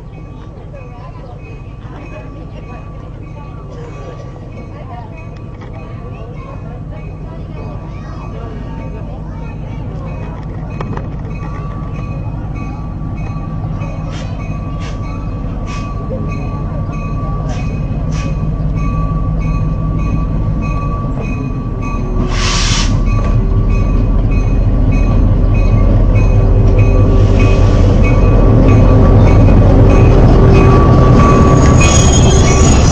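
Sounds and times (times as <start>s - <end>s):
train rumble: 0.0s - 32.9s
brief hiss: 22.3s - 23.0s.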